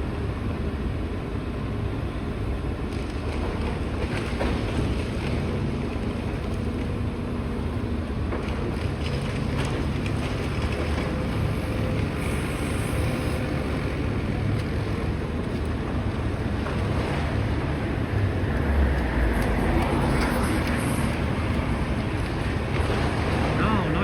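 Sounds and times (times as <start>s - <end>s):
excavator diesel engine running: 4.7s - 24.0s
wind buffeting microphone: 9.3s - 24.0s.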